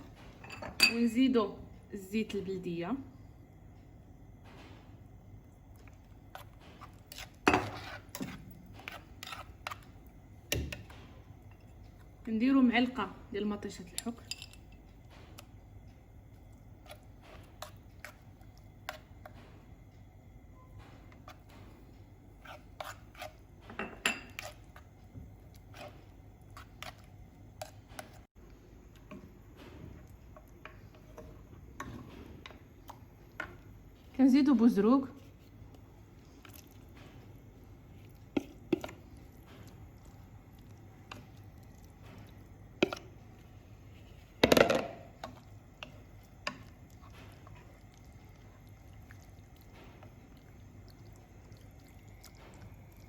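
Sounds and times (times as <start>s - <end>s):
dishes and utensils clinking: 0.3s - 1.2s, 23.7s - 24.7s.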